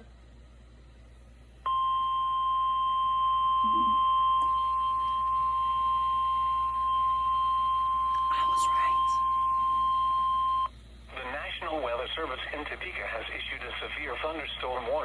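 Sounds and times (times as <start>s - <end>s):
steady alarm tone: 1.7s - 10.7s.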